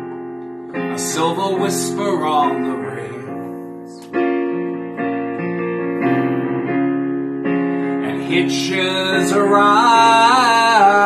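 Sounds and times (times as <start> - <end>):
piano playing sustained chords: 0.0 - 11.0
person singing: 0.8 - 4.3, 7.8 - 11.0.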